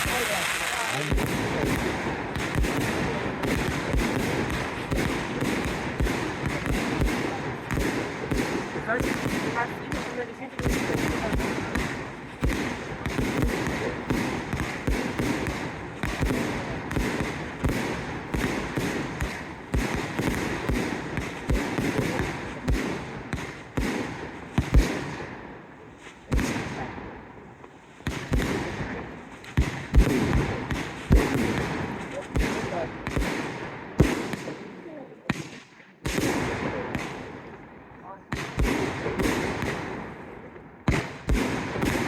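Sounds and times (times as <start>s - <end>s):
firework booming thuds: 0.0s - 25.3s
firework crackling: 0.0s - 34.7s, 40.9s - 42.0s.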